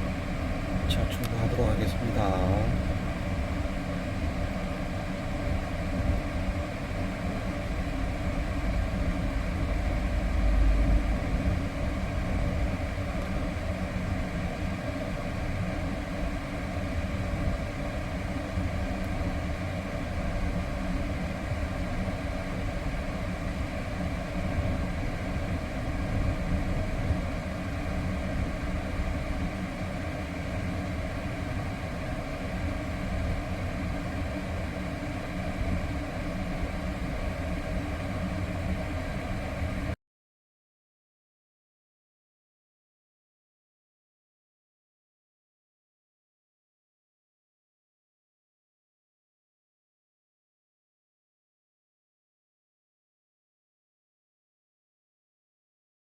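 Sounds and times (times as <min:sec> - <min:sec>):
air conditioning running: 0:00.0 - 0:40.0
low rumble: 0:07.9 - 0:13.2.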